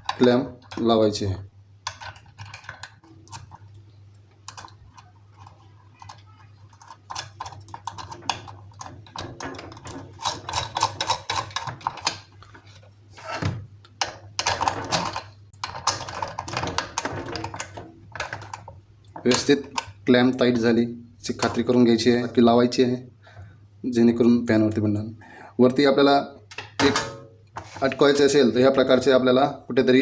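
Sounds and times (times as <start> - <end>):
small metal clicks and rattles: 4.4 - 12.3.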